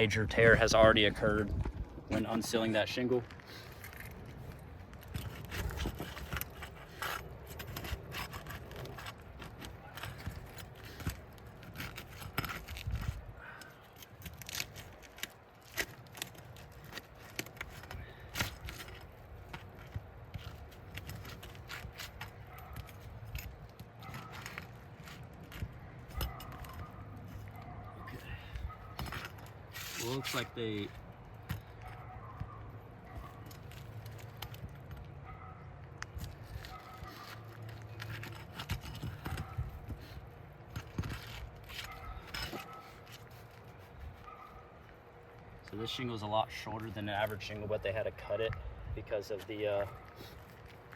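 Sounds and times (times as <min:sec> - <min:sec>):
roofing tool scraping shingle: 0:02.1 - 0:27.5, 0:28.9 - 0:32.1, 0:36.2 - 0:44.3.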